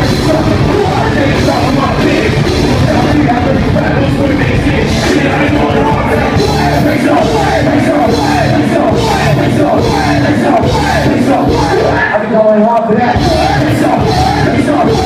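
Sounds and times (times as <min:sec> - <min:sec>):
live rock-rap music: 0:00.0 - 0:15.0
shouted sung vocals: 0:00.0 - 0:15.0.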